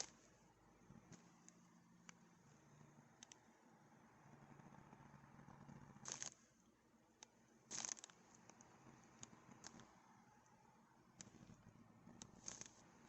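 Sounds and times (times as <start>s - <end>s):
handling rustles: 0.0s - 1.6s, 7.6s - 8.6s, 12.2s - 13.0s
soft clicks: 1.0s - 3.5s, 7.1s - 12.9s.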